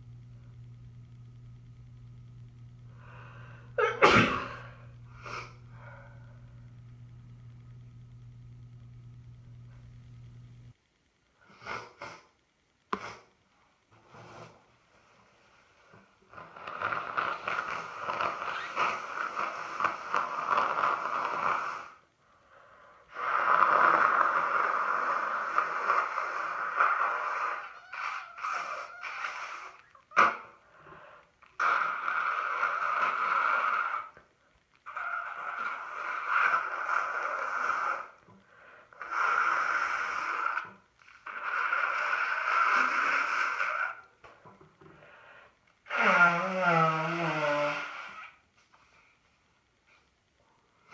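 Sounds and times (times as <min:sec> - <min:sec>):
congested nose blowing: 0:16.3 - 0:22.0, 0:23.1 - 0:34.2, 0:35.4 - 0:44.1, 0:45.8 - 0:48.4.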